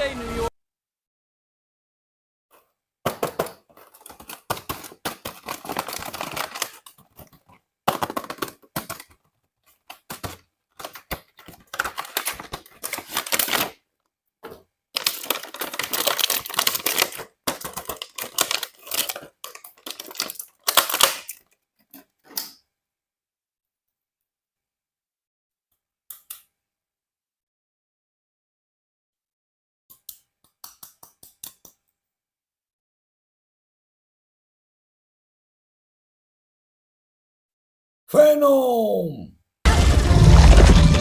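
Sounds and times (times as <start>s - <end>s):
plastic packaging crackling: 3.2s - 13.8s, 15.0s - 21.5s.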